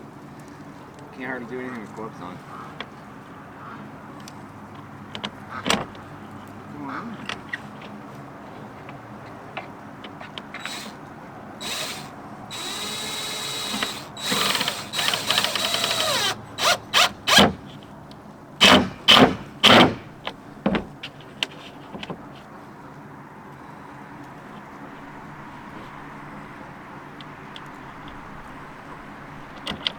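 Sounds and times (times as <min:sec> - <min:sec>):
power drill whirring: 0:10.6 - 0:11.0, 0:11.6 - 0:17.7, 0:18.6 - 0:20.2.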